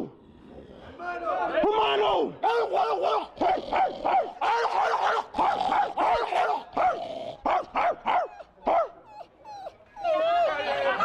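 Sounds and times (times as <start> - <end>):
man imitating dog barks: 2.4 - 9.0.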